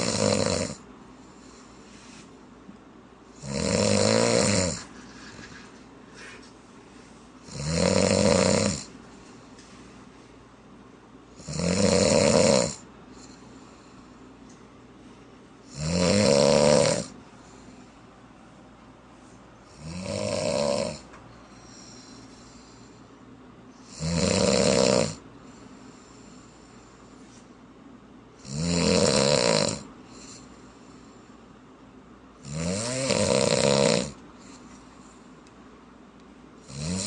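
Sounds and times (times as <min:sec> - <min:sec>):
loud snoring: 0:00.0 - 0:00.8, 0:03.4 - 0:04.9, 0:07.4 - 0:08.9, 0:11.4 - 0:12.8, 0:15.7 - 0:17.2, 0:19.7 - 0:21.1, 0:23.8 - 0:25.2, 0:28.4 - 0:30.4, 0:32.4 - 0:34.2, 0:36.6 - 0:37.0
quiet breathing: 0:00.8 - 0:02.6, 0:12.8 - 0:15.4, 0:17.1 - 0:18.4, 0:21.0 - 0:23.9, 0:25.3 - 0:27.6, 0:30.0 - 0:31.6, 0:34.2 - 0:35.5.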